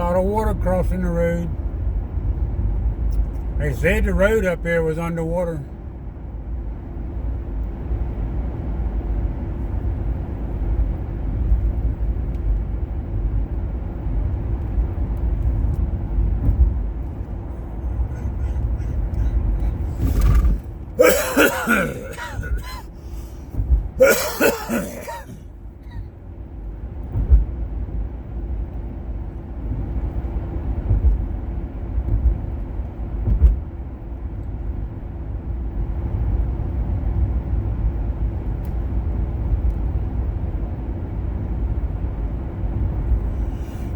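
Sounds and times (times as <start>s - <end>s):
car road and engine rumble: 0.0s - 43.9s
faint steady hum: 8.9s - 27.1s
person coughing: 17.9s - 23.0s, 24.0s - 26.0s.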